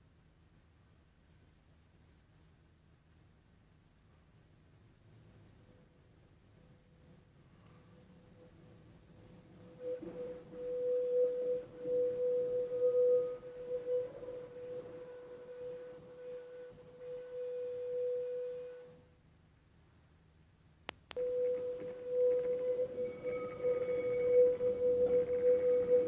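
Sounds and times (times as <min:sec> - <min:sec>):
metallic squeal of steel on rail: 0:09.7 - 0:19.0, 0:21.2 - 0:26.0.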